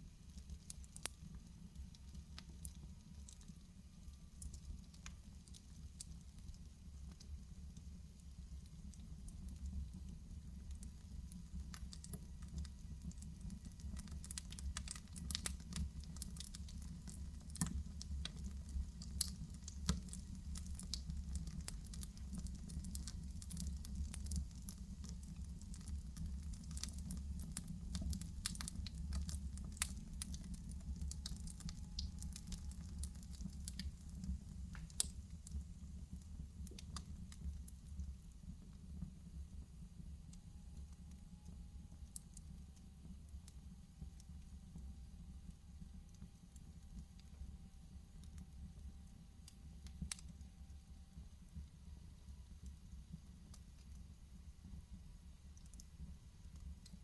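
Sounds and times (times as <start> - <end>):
fire crackling: 0.2 - 39.8, 55.6 - 57.0.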